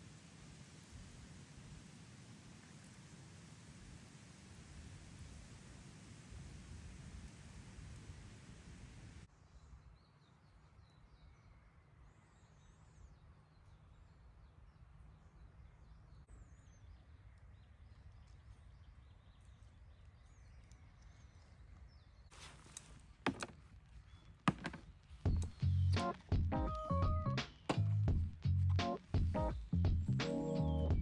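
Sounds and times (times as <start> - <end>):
bird chirps and warbles: 9.3 - 23.0, 23.9 - 28.1.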